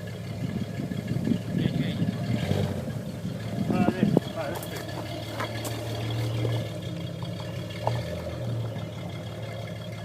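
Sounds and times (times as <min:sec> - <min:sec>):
car engine running at low revs: 0:00.0 - 0:10.0.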